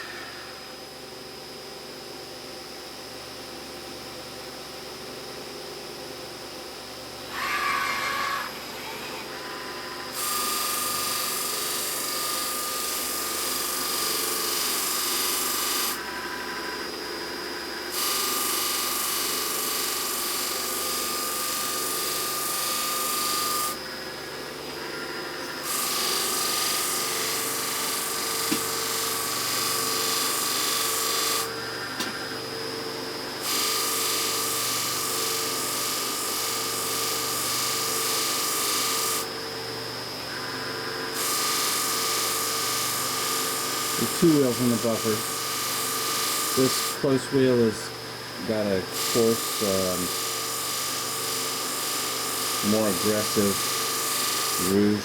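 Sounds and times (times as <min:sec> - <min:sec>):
polishing buffer running: 0:07.3 - 0:55.0
hissing grind of part on wheel: 0:41.1 - 0:47.8, 0:48.8 - 0:55.0.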